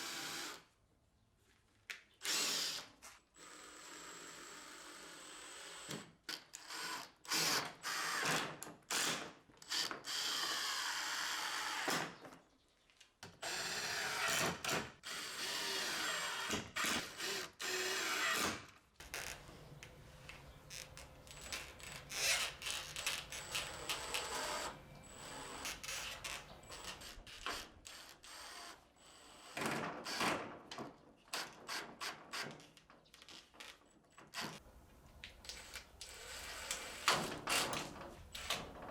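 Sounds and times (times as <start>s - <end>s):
handheld power tool running: 15.1s - 28.6s, 35.4s - 38.6s.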